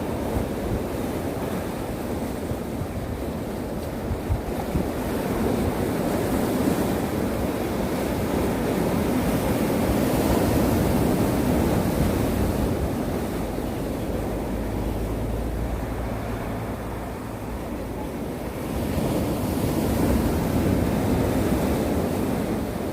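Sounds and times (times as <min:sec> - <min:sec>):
sea waves breaking on shore: 0:00.0 - 0:22.9
wind buffeting microphone: 0:00.0 - 0:22.9.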